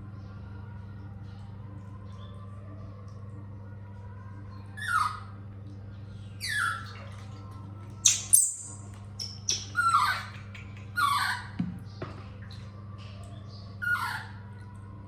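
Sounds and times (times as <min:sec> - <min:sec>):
baby monkey squealing: 0:06.4 - 0:06.9, 0:08.0 - 0:10.4, 0:11.0 - 0:11.6.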